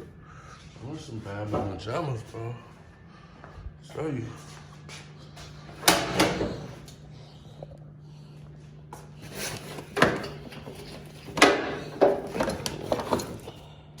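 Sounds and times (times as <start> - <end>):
steady low hum: 0.0 - 14.0
objects knocking and clunking: 9.2 - 13.6.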